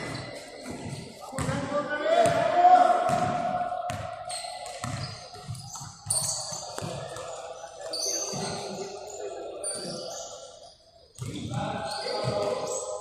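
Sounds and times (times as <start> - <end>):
shoe squeaks: 0.0 - 1.4, 4.3 - 13.0
basketball dribbling on hard court: 3.1 - 3.3, 4.8 - 7.2.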